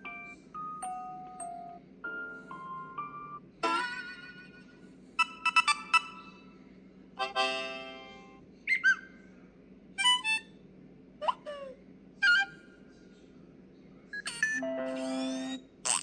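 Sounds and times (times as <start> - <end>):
swooping blips: 14.3 - 15.6.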